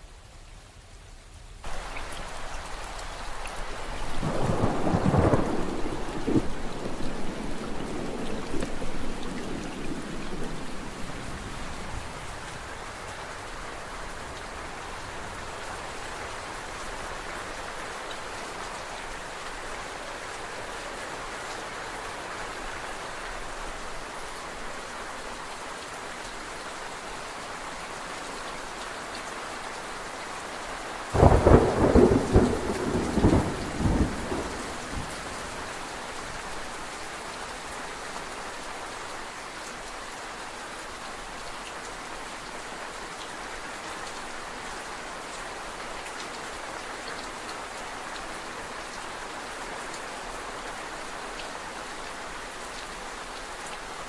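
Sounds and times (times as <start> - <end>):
steady rain falling: 0.0 - 54.0
thunder clap and rumble: 4.2 - 12.1, 31.2 - 35.6.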